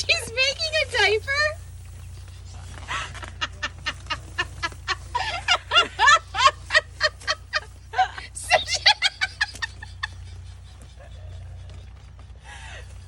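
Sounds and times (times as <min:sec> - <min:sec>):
low steady hum: 0:00.0 - 0:13.0
high-pitched laughter: 0:02.8 - 0:11.4.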